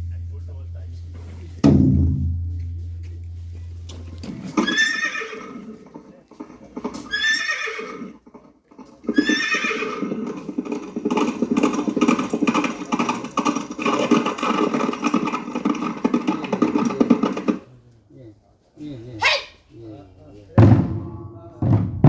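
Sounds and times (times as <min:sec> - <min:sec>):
fast dense clatter of beats: 0:00.0 - 0:04.7, 0:10.2 - 0:17.7, 0:20.6 - 0:22.0
horse whinnying: 0:04.5 - 0:12.8.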